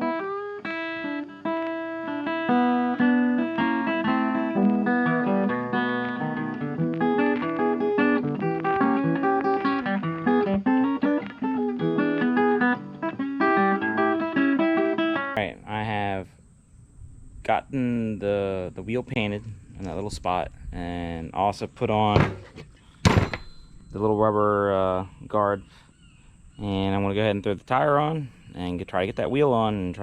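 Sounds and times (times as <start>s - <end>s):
guitar plucked and strummed: 0.0s - 15.4s.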